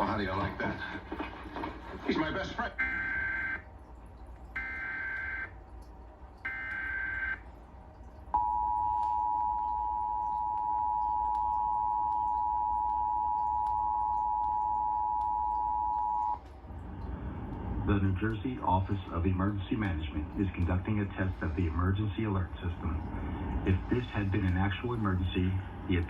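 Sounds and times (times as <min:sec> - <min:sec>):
two-tone attention signal: 0:02.8 - 0:03.6, 0:06.5 - 0:07.4, 0:08.4 - 0:16.4.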